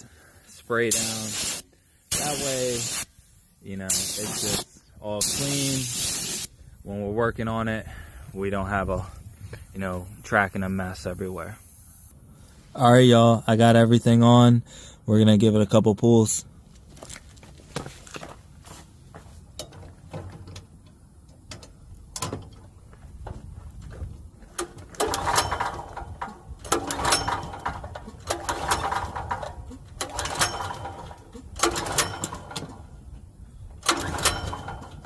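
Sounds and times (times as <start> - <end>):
small clicks and handling knocks: 19.5 - 32.9
recoil starter whirring: 24.5 - 33.1, 33.8 - 35.0.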